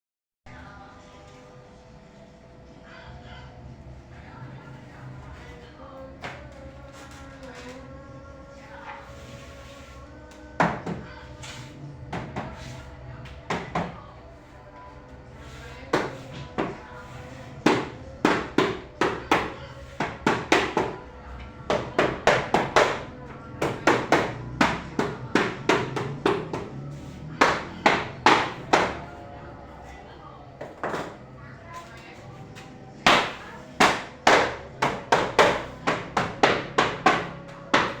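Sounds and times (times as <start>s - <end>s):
hammer striking wood: 17.6s - 21.0s, 27.4s - 29.1s, 33.1s - 38.0s.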